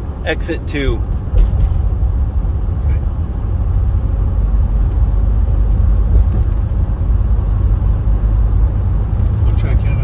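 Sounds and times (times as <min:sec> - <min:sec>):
engine and road noise drone: 0:00.0 - 0:10.0.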